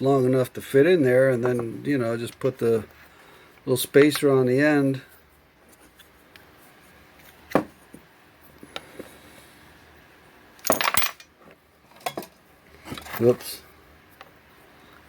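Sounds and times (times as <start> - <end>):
metal parts clinking: 10.6 - 11.3.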